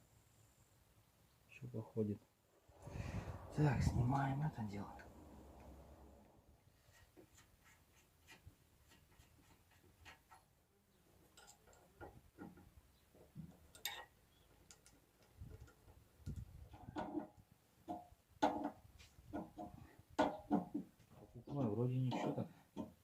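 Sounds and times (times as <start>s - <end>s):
tools and metal parts clicking: 11.4s - 12.0s, 13.7s - 14.1s.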